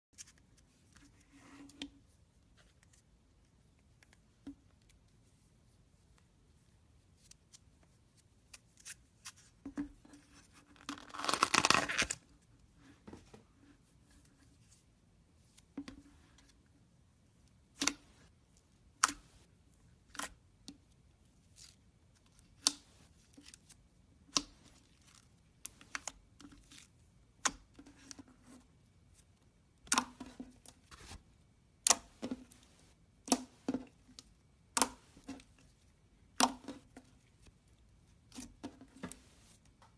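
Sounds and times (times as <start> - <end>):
slime tearing and crinkling: 11.0 - 12.2.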